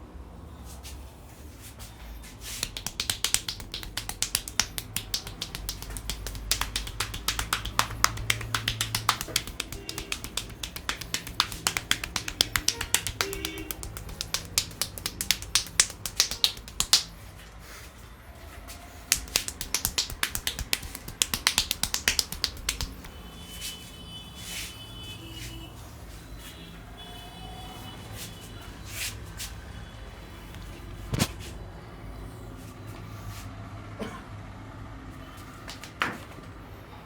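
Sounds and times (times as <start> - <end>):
hands snapping and slapping on head: 2.5 - 17.2, 19.1 - 23.2.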